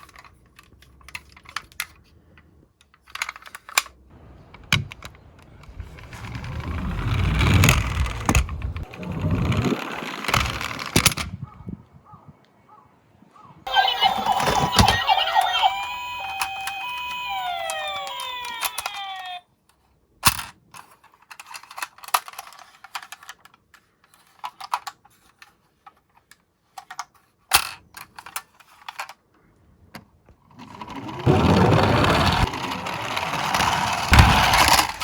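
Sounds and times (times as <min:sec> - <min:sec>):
toy car rolling: 0:00.0 - 0:02.1, 0:02.8 - 0:04.0, 0:04.7 - 0:11.3, 0:13.7 - 0:19.4, 0:20.3 - 0:29.2, 0:30.5 - 0:35.0
plastic toy cars clicking: 0:00.0 - 0:11.3, 0:13.7 - 0:29.4, 0:30.0 - 0:35.0
toy ambulance siren: 0:13.7 - 0:19.4, 0:30.6 - 0:35.0.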